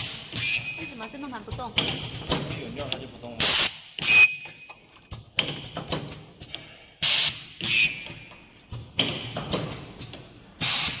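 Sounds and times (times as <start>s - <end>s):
machine clicks and knocks: 0.8s - 3.1s, 4.9s - 6.8s, 8.0s - 10.4s
compressed air hisses: 10.6s - 11.0s.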